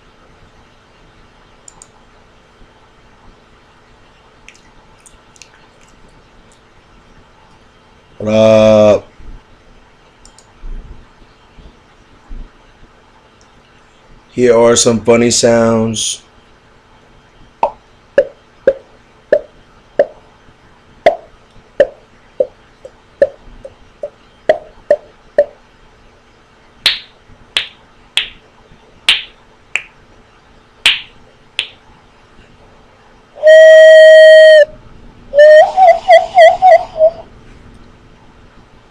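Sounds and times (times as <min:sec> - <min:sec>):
sharp high pops: 0:26.8 - 0:28.4, 0:29.1 - 0:30.0, 0:30.8 - 0:31.8
whistle-like tone: 0:33.4 - 0:37.2.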